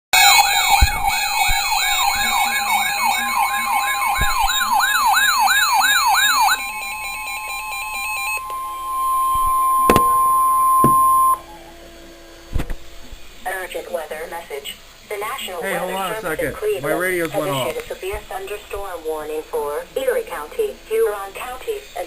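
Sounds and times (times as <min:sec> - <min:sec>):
steady attention tone: 0:00.2 - 0:11.5
wailing siren: 0:00.2 - 0:11.5.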